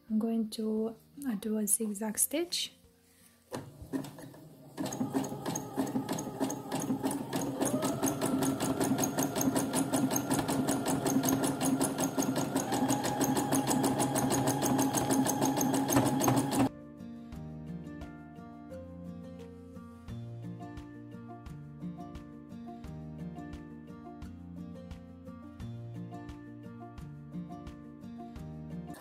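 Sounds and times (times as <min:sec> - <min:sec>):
sewing machine stitching: 0:03.5 - 0:16.7.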